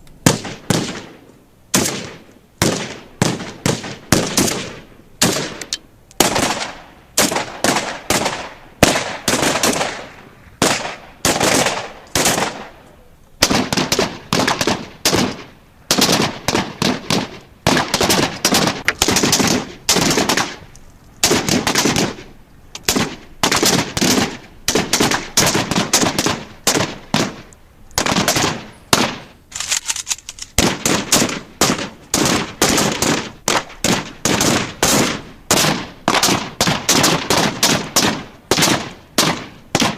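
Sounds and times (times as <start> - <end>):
automatic weapon firing bursts: 6.2 - 12.7, 13.4 - 20.6, 21.2 - 22.2, 22.9 - 27.4, 28.0 - 29.2, 30.6 - 39.9.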